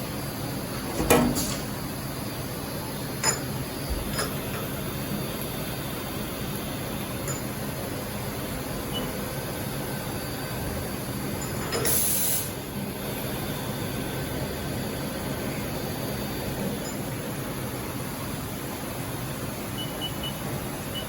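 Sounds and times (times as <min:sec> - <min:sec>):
machinery hum: 0:00.0 - 0:21.0
hiss of air: 0:11.7 - 0:12.6.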